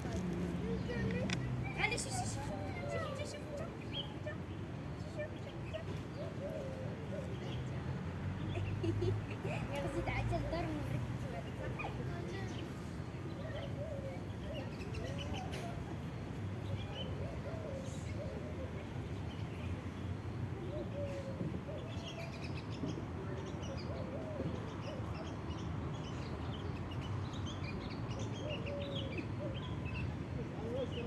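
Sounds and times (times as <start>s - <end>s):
low background noise: 0.0s - 31.0s.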